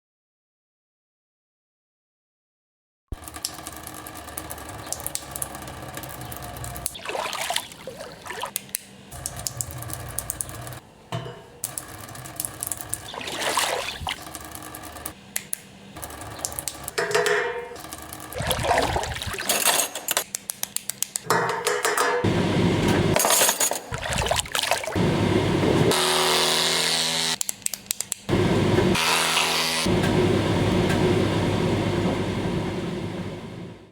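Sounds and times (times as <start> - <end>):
water pouring: 6.6 - 8.6, 12.5 - 14.6, 18.2 - 19.8, 23.8 - 25.0.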